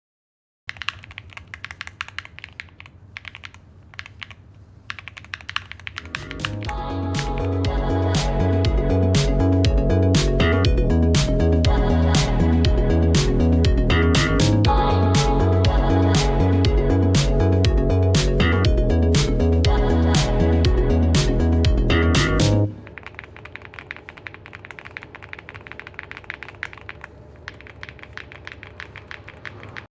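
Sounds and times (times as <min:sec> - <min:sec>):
mechanical keyboard typing: 0:00.7 - 0:07.7, 0:22.7 - 0:30.0.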